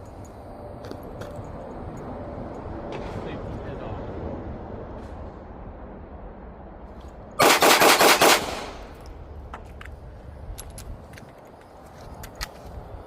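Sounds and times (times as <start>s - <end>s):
pistol shots: 7.4s - 8.9s.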